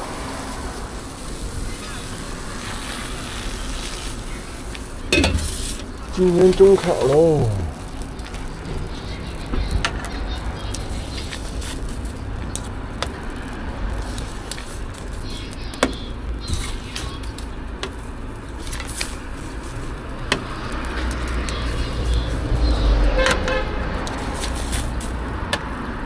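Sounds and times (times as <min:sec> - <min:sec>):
low traffic rumble: 0:00.0 - 0:26.0
sharp clicks and knocks: 0:05.2 - 0:05.9.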